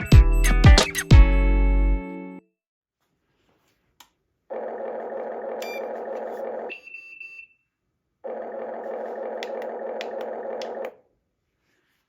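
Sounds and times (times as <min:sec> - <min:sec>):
short high beep: 0:06.7 - 0:07.6.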